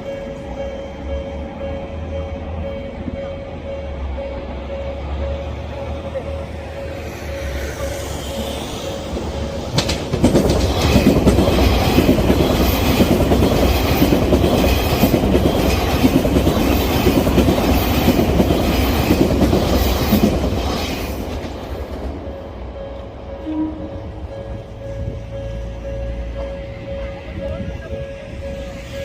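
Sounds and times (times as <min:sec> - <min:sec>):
crossing warning bell dinging: 0:00.0 - 0:20.4, 0:21.3 - 0:29.0
train wheels clattering on rail joints: 0:09.5 - 0:23.1.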